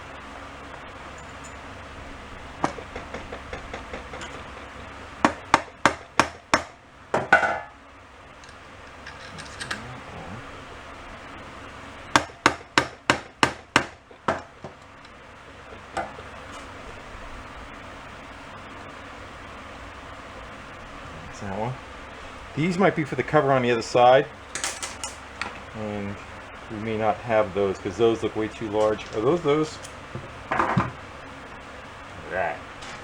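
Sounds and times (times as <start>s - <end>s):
clicks and taps of hand tools: 2.6s - 4.7s
screws and bolts rattling: 2.6s - 5.6s, 8.4s - 9.9s, 24.5s - 25.2s.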